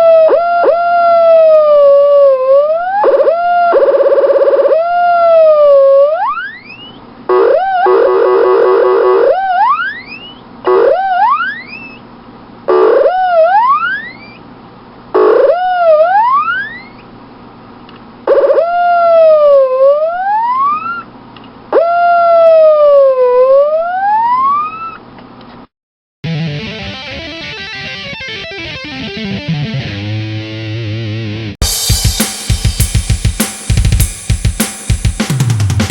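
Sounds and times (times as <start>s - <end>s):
electronic whistle tones from toy: 6.2s - 12.0s
guitar music: 26.2s - 34.0s.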